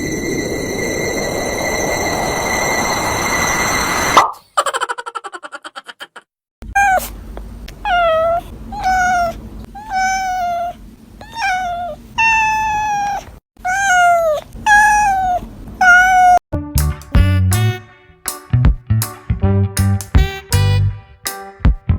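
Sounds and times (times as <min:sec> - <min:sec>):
cat meowing: 0:06.8 - 0:07.1, 0:07.8 - 0:16.4.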